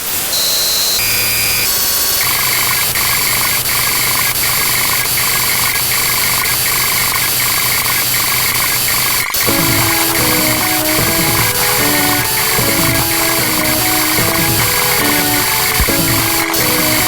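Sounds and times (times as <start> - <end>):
electronic beeps: 9.4 - 17.0
steady hiss: 9.4 - 17.0
buzzy two-note pulsing tone: 9.5 - 17.0.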